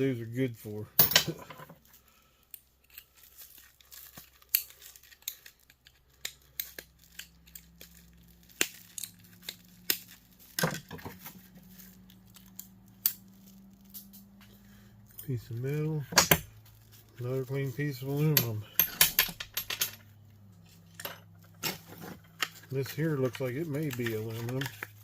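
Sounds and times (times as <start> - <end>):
plastic and metal parts snapping: 4.0 - 14.2, 16.1 - 16.5, 21.4 - 25.0.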